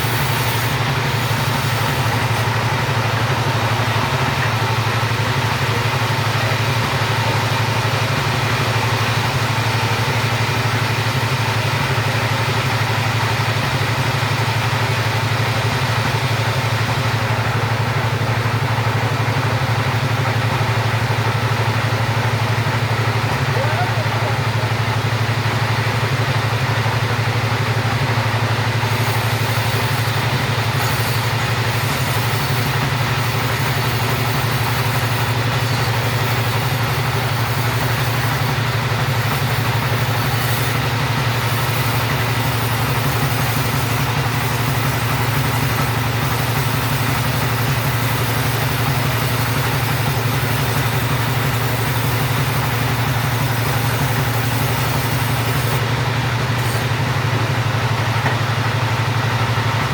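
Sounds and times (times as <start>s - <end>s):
chainsaw running: 0.0s - 59.9s.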